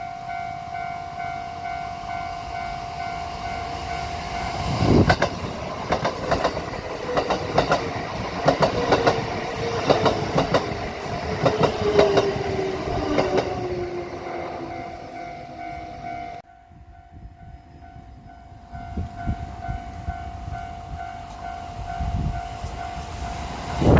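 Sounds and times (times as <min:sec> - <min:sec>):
level crossing warning bell: 0:00.0 - 0:04.8, 0:13.7 - 0:23.9
train whine: 0:00.0 - 0:23.9
train wheels clacking on rail joints: 0:04.8 - 0:13.8.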